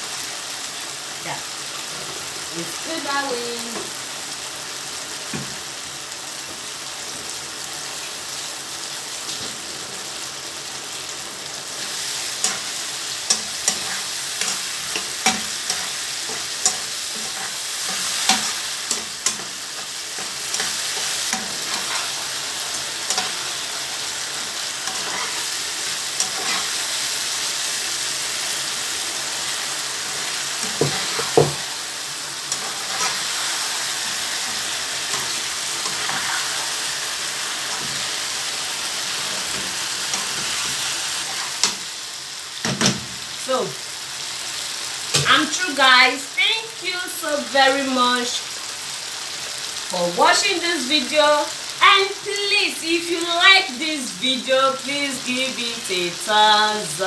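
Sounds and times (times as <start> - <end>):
stew sizzling in oil: 0.0 - 57.0
spoon scraping a pot: 24.8 - 25.6, 26.2 - 26.8, 32.5 - 33.6, 34.4 - 36.8.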